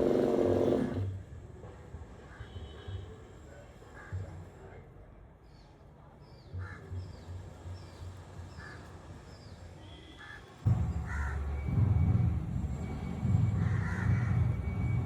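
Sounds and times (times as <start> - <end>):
crows cawing: 13.7 - 14.2.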